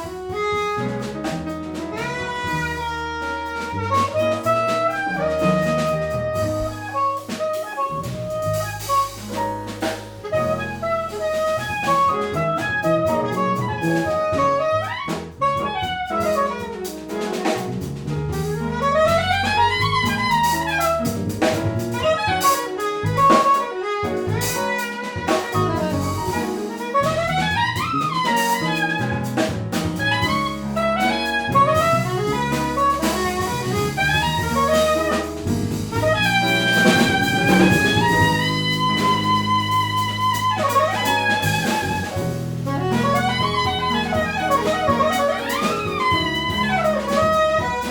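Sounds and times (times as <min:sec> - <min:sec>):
jazz quartet playing: 0:00.0 - 0:47.9
saxophone runs: 0:30.0 - 0:47.9.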